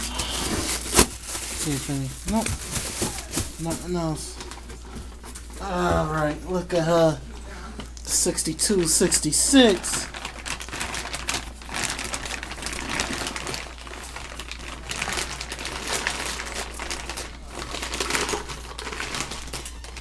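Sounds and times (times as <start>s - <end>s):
packaging wrap crinkling: 0.0s - 5.6s, 8.2s - 20.0s.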